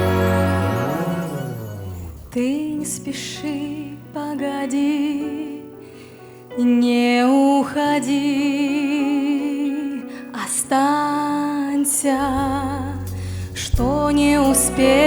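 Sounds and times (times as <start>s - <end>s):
person singing with vibrato: 0.0s - 5.7s, 13.8s - 15.0s
soft accompaniment: 0.0s - 6.0s, 12.1s - 15.0s.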